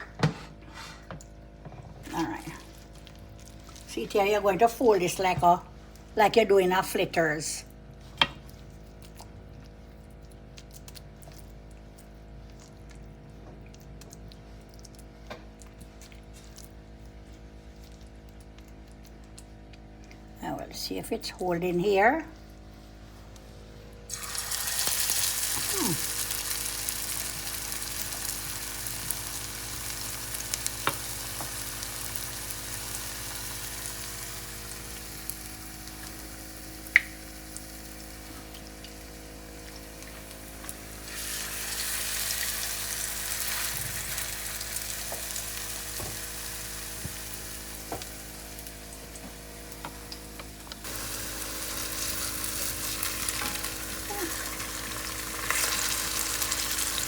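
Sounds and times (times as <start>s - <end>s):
food sizzling in hot oil: 24.1s - 48.8s, 50.9s - 57.0s
small oil pops: 36.9s - 37.2s.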